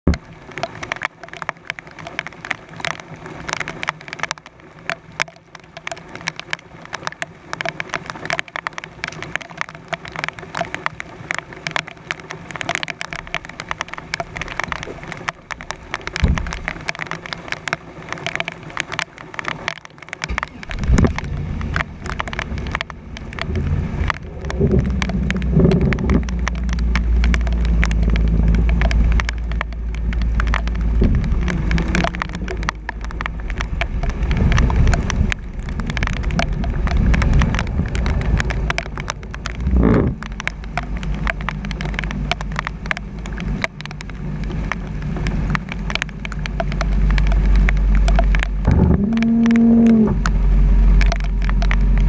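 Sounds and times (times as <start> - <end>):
rain patter on housing: 0.0 - 52.0
low rumble: 20.2 - 52.0.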